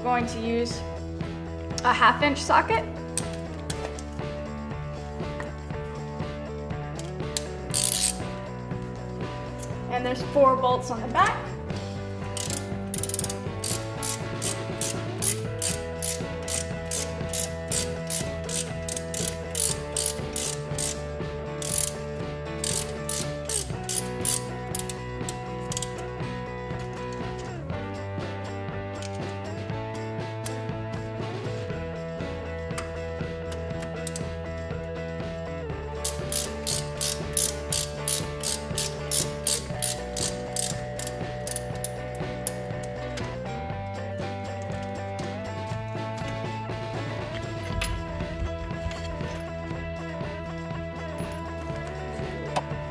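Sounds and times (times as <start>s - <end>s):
background music: 0.0s - 52.9s
socket ratchet clicking: 3.1s - 4.2s, 7.0s - 8.4s, 12.2s - 27.6s, 28.4s - 29.4s, 32.7s - 34.4s, 36.0s - 43.4s.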